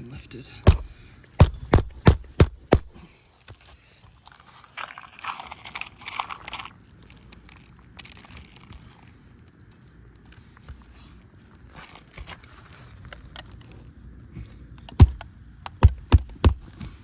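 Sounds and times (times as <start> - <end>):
roof shingles crunching and scraping: 0.4 - 9.4, 10.3 - 14.2.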